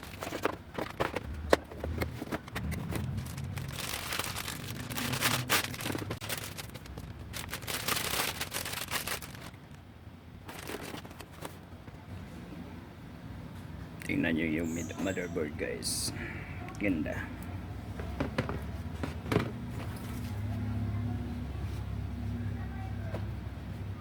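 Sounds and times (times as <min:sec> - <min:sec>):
packaging crinkling and rustling: 0:00.0 - 0:11.7.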